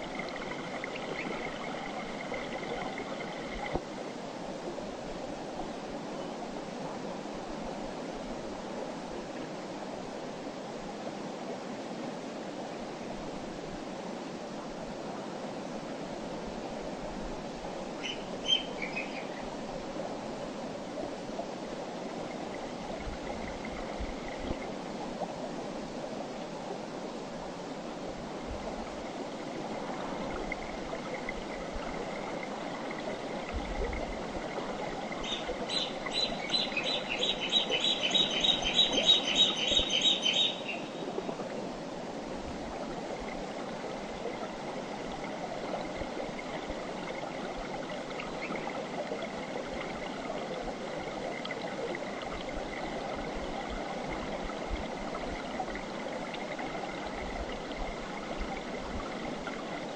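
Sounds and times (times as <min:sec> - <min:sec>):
high chirping calls: 0:35.2 - 0:40.9.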